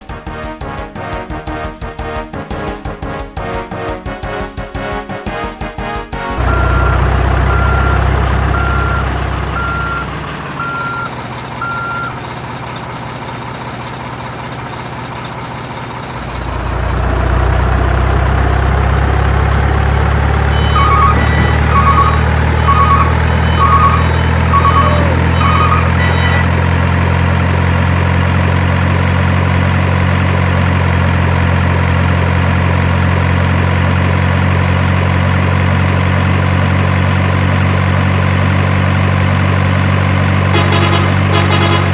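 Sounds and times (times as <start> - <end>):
heavy truck engine running: 0.0 - 41.9
reversing beeper: 6.4 - 12.4, 20.4 - 27.4, 40.5 - 41.9.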